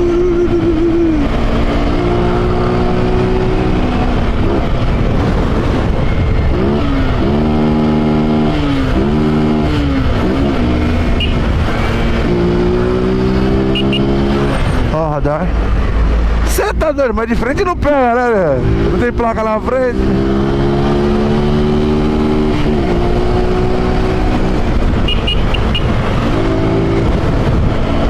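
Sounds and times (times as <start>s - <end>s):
motorcycle engine revving: 0.0s - 16.5s, 17.9s - 28.0s.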